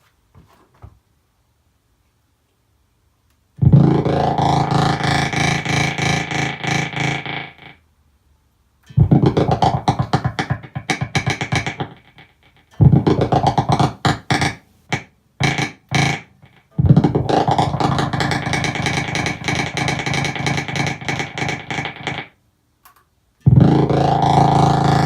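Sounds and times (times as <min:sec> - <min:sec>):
electric guitar pulsing notes: 0:03.6 - 0:07.8, 0:08.9 - 0:22.3, 0:23.4 - 0:25.0.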